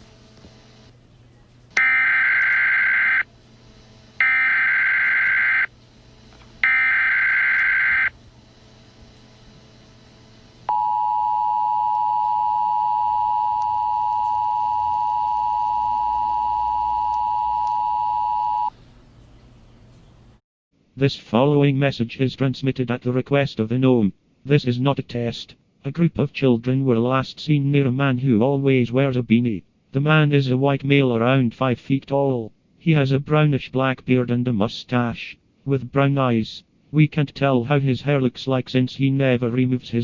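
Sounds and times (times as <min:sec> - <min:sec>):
two-tone attention signal: 0:01.8 - 0:03.2, 0:04.2 - 0:05.7, 0:06.6 - 0:08.1, 0:10.7 - 0:18.7
warbling data tone bursts: 0:04.2 - 0:05.7, 0:06.6 - 0:08.1.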